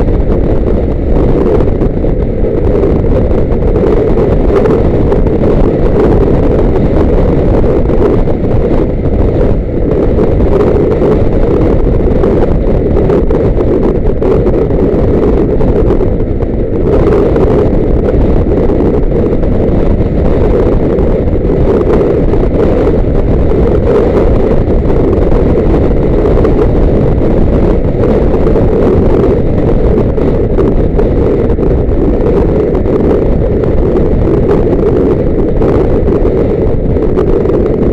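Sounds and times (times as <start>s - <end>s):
moving vehicle running noise: 0.0s - 37.9s
wind rushing on microphone: 0.0s - 37.9s.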